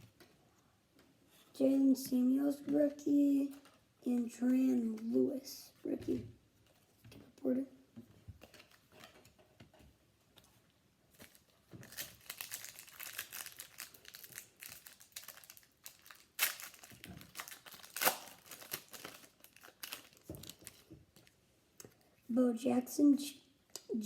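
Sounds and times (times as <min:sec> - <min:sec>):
card pack wrapper crinkling: 0:11.2 - 0:21.4
wrapper snapping: 0:11.2 - 0:21.4.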